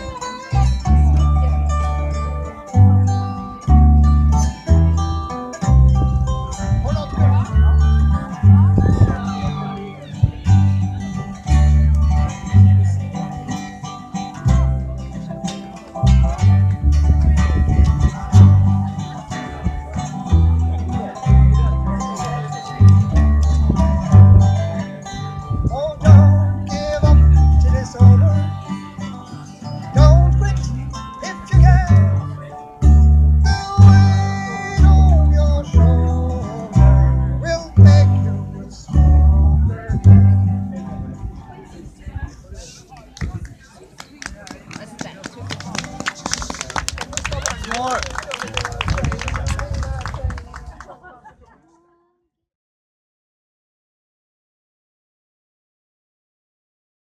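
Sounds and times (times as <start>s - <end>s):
low bass notes: 0.0s - 42.8s
acoustic guitar folk music: 0.0s - 48.0s
person singing: 33.4s - 40.4s.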